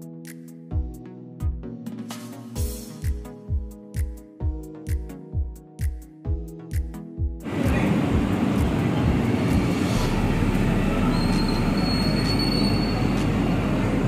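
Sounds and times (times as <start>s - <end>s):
heavy machinery rumble: 7.5s - 14.0s
low hum: 7.5s - 14.0s
thin high squeal: 11.0s - 13.2s.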